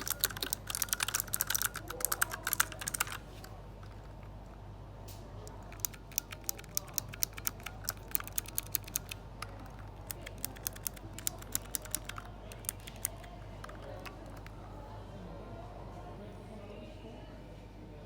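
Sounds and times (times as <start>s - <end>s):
mechanical keyboard key clicks: 0.0s - 3.2s, 5.4s - 14.6s
faint hum: 0.0s - 18.0s.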